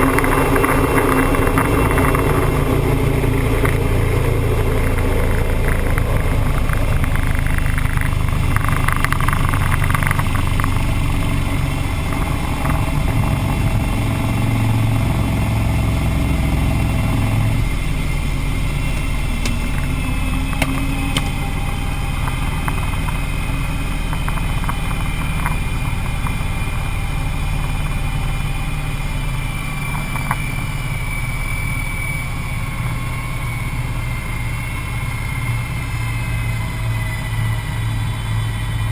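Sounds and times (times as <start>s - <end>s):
jet engines rumbling: 0.0s - 38.9s
high whistling tone: 11.6s - 38.9s.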